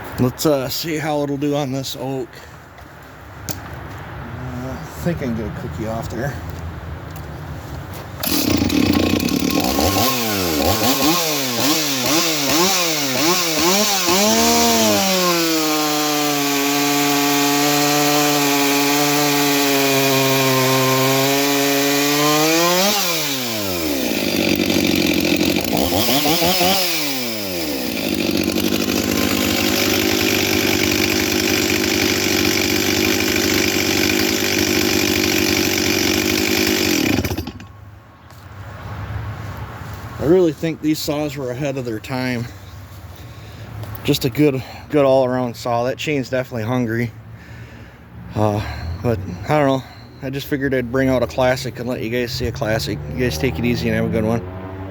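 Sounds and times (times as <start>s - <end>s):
chainsaw revving: 8.2s - 37.7s, 51.2s - 54.9s
chainsaw cutting wood: 8.2s - 37.8s.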